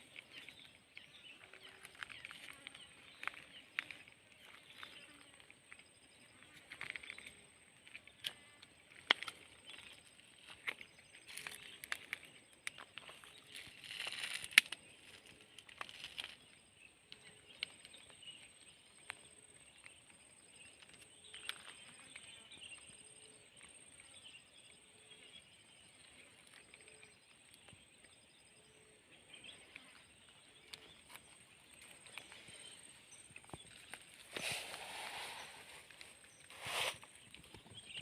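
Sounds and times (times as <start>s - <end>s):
clicks and rustles: 6.6s - 16.4s.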